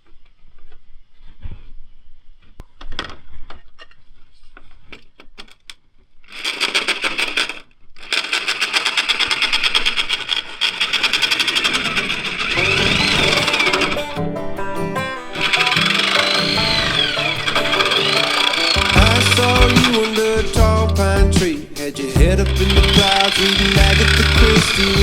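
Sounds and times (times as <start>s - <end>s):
power tool running: 6.3s - 14.6s, 15.2s - 25.0s
knocks and clicks: 15.4s - 21.5s, 22.2s - 25.0s.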